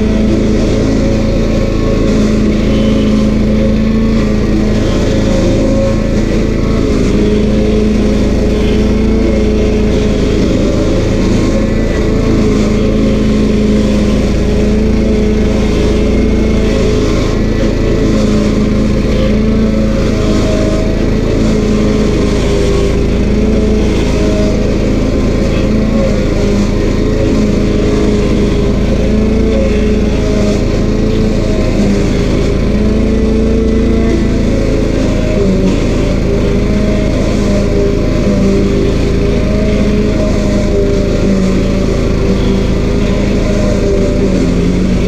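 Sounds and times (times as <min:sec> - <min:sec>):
stump grinder engine running: 0:00.0 - 0:45.0.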